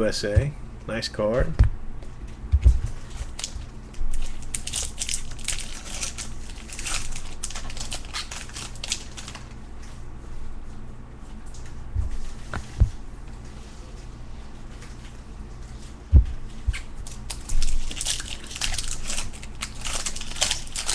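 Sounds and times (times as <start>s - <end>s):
card pack wrappers crinkling: 3.1s - 9.5s, 17.0s - 20.9s.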